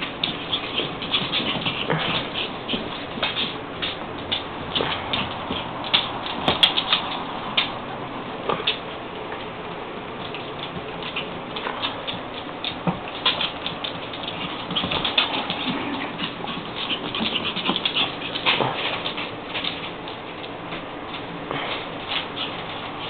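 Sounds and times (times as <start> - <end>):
paws and claws scrabbling: 0.0 - 23.0.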